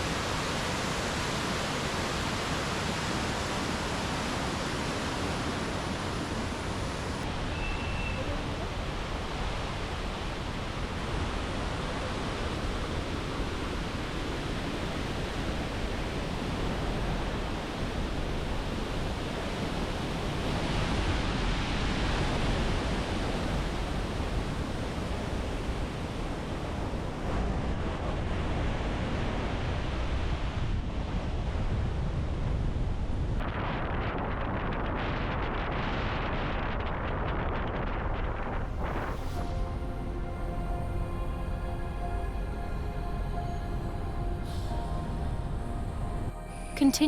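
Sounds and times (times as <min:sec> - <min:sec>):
waterfall roaring: 0:00.0 - 0:27.4.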